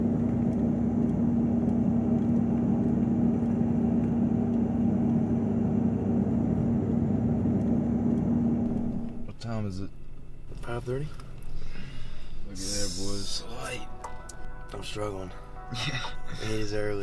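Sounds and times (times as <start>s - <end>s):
vehicle engine and road drone: 0.0s - 17.0s.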